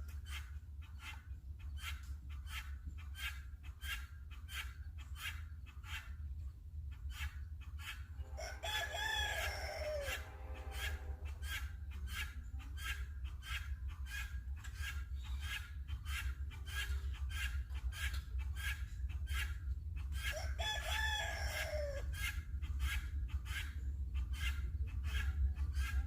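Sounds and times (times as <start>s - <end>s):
chickens clucking: 0.0s - 6.2s, 7.0s - 26.0s
rooster crowing: 8.3s - 11.1s, 20.3s - 22.1s.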